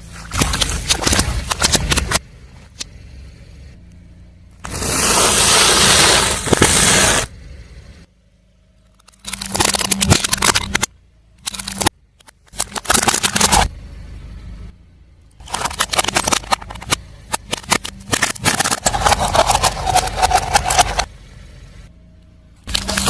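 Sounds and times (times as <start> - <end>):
car engine running: 0.0 - 23.0
tyre crunching objects: 4.6 - 7.3, 15.4 - 21.1, 22.7 - 23.0.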